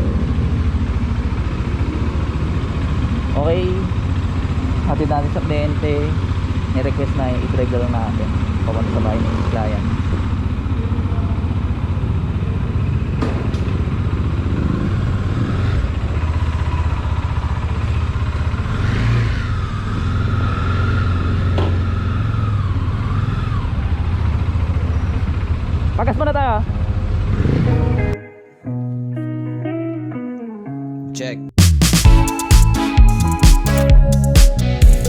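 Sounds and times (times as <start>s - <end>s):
motorcycle engine running: 0.0s - 28.2s
wavering higher tone: 32.0s - 35.0s.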